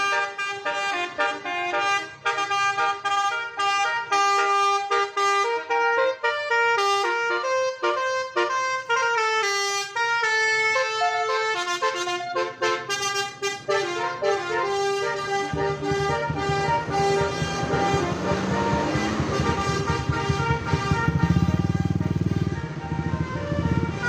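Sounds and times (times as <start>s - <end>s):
bus musical horn melody: 0.0s - 24.0s.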